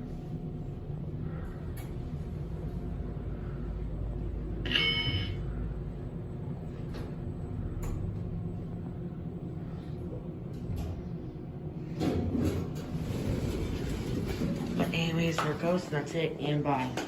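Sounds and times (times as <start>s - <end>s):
steady low hum: 0.0s - 17.0s
elevator chime ding: 4.6s - 5.5s.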